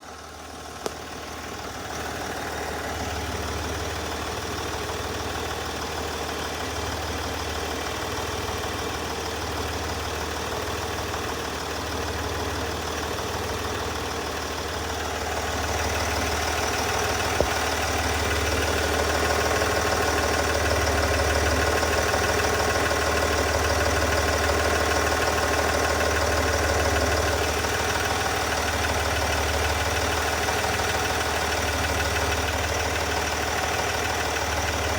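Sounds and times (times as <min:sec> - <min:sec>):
diesel engine idling: 0:00.0 - 0:34.9
engine ticking: 0:00.0 - 0:34.9.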